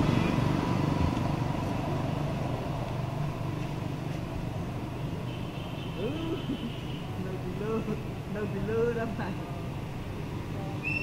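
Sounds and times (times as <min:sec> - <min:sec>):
vehicle engine running: 0:00.0 - 0:05.4.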